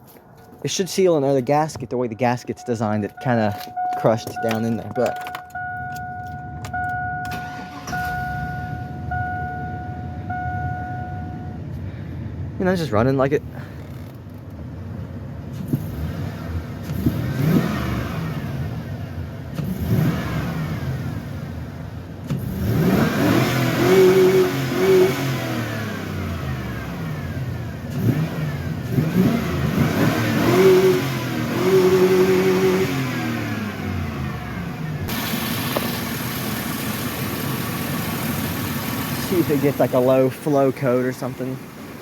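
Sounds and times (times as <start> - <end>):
car engine free-revving: 7.3 - 8.8, 15.5 - 42.0.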